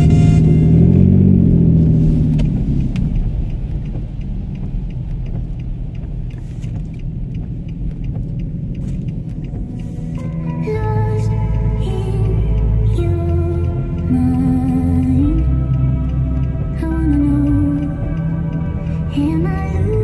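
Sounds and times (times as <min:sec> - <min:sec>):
music: 0:00.0 - 0:01.4, 0:09.0 - 0:20.0
car rumbling: 0:00.0 - 0:20.0
faint ticks: 0:02.1 - 0:20.0.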